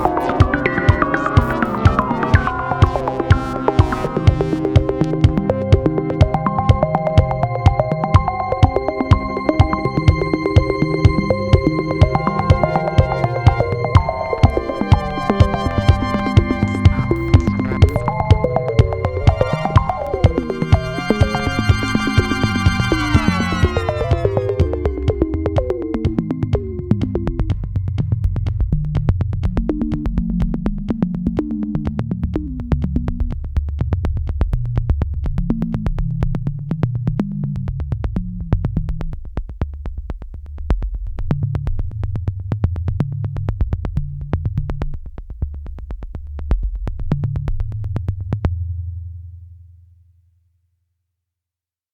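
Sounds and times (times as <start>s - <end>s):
electronic music with synth bass: 0.0s - 26.8s.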